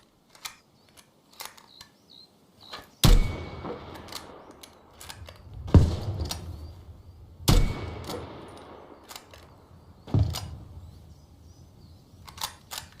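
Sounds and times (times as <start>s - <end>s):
small mechanical clicks: 0.0s - 2.0s, 4.0s - 5.5s, 9.0s - 9.6s, 12.2s - 13.0s
heavy thumping gunshots: 5.6s - 6.3s.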